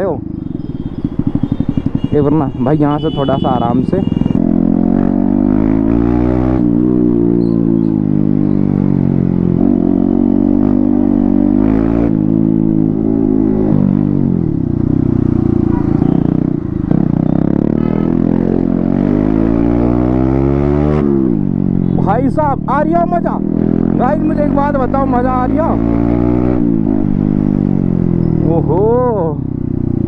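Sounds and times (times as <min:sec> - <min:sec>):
motorcycle engine revving: 0:00.0 - 0:30.0.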